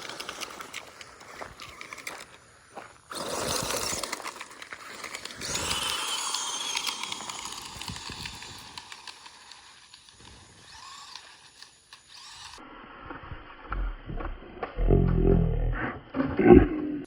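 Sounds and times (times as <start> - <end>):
tyres scrabbling in dirt and gravel: 0.0 - 12.6
electric motor whine: 0.0 - 15.4.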